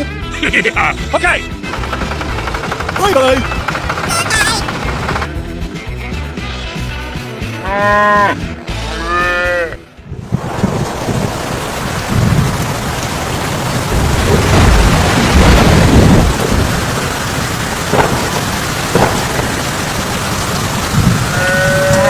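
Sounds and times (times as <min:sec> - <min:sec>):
deep rumble: 0:10.1 - 0:22.0
loud rushing noise: 0:10.2 - 0:22.0.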